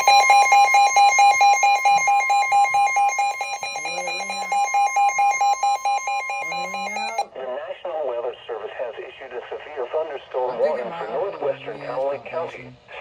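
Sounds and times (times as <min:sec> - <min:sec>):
pulsing alarm beeps: 0:00.0 - 0:07.3
steady high warning tone: 0:00.0 - 0:07.3.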